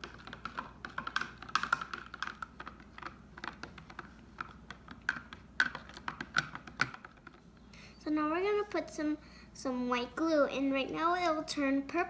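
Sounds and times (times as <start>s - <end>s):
stirrer tapping against container: 0.0s - 7.5s.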